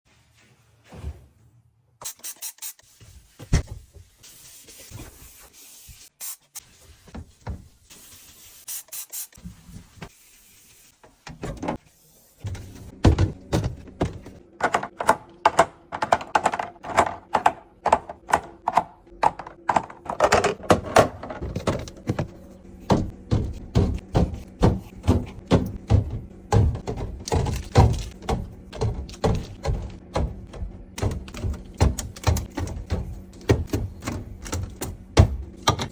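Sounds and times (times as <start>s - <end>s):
containers clicking and knocking: 13.2s - 22.3s.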